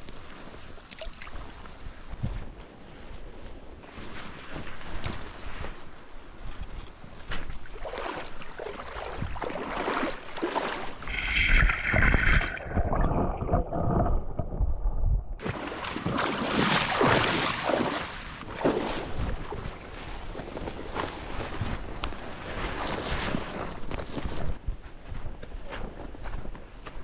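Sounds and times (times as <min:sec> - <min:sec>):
wind on microphone: 0:09.0 - 0:09.6, 0:11.0 - 0:26.6.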